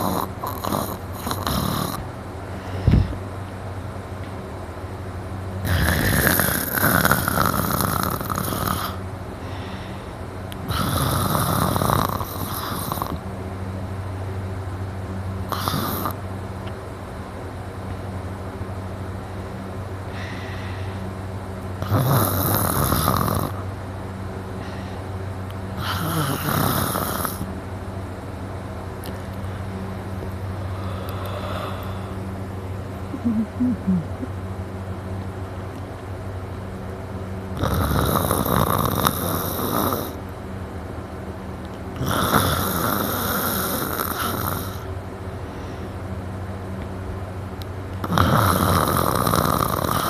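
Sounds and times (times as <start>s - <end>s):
man snoring loudly: 0.0s - 2.0s, 5.6s - 9.0s, 10.7s - 13.2s, 15.5s - 16.2s, 21.8s - 23.6s, 25.8s - 27.4s, 37.6s - 40.2s, 42.0s - 44.9s, 48.0s - 50.0s
steady low hum: 0.0s - 50.0s.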